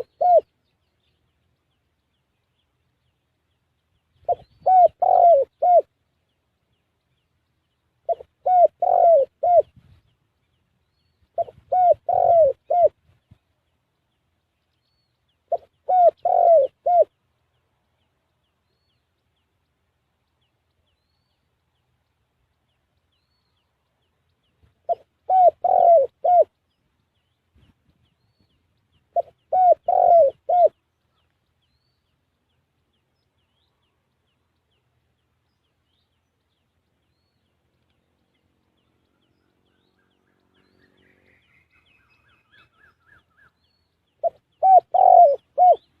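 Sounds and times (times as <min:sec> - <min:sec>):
dove cooing: 0:00.0 - 0:00.5, 0:04.2 - 0:05.9, 0:08.0 - 0:09.8, 0:11.3 - 0:13.0, 0:15.5 - 0:17.2, 0:24.8 - 0:26.5, 0:29.1 - 0:30.8, 0:44.2 - 0:46.0
small bird chirps: 0:00.0 - 0:46.0.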